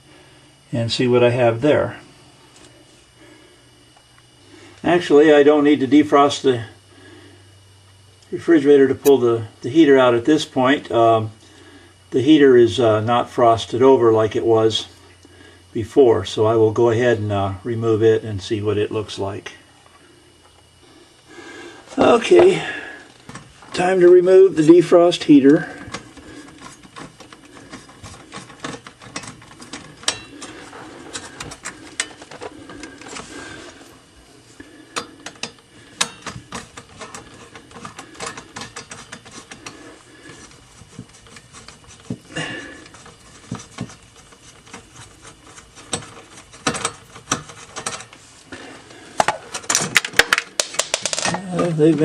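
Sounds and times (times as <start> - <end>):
tools clicking and scraping: 25.8 - 33.9, 34.9 - 48.2.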